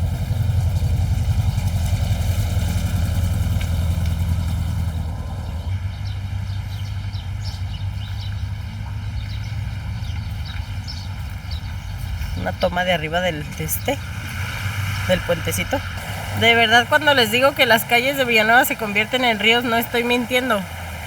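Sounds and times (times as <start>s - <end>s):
car engine idling: 0.0s - 21.0s
river rushing: 12.5s - 21.0s.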